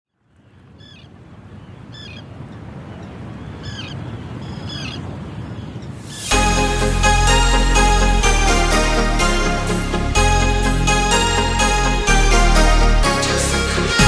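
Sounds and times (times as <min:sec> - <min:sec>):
bird calling: 0:00.4 - 0:06.3
low rushing background: 0:05.9 - 0:14.0.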